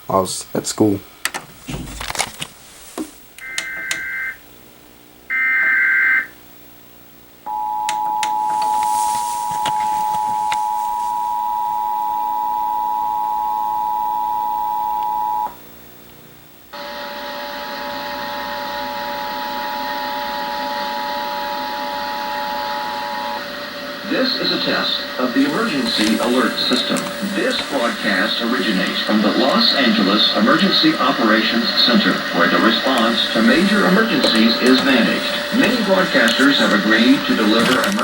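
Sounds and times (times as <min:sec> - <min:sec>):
steady tones over hiss: 0:00.0 - 0:16.8, 0:22.8 - 0:38.0
two-tone attention signal: 0:03.4 - 0:04.4, 0:07.5 - 0:15.6.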